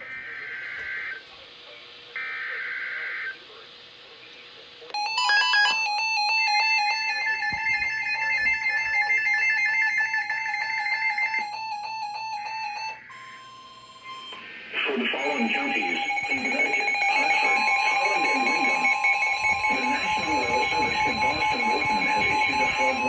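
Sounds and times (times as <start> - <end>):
pulsing electronic alert tone: 5.0 - 14.4, 15.1 - 23.0
screeching data burst: 12.9 - 23.0.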